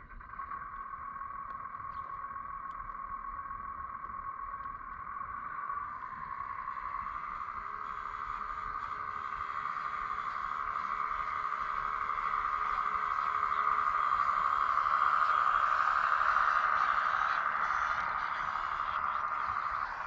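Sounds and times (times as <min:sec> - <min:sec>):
small electric motor whine: 0:05.3 - 0:20.0.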